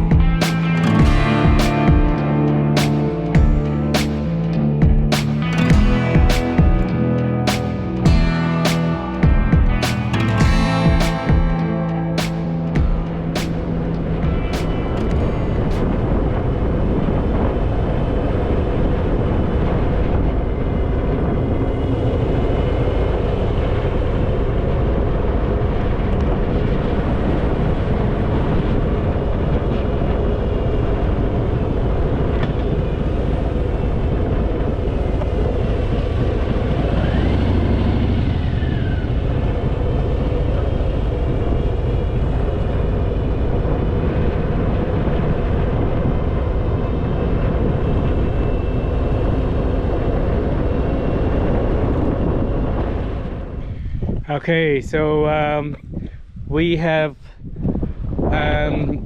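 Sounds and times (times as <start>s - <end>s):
motorcycle engine running: 0.0s - 2.2s, 2.9s - 7.5s, 8.1s - 11.8s, 12.8s - 14.6s, 34.2s - 42.6s
wind rush on microphone: 9.2s - 59.0s.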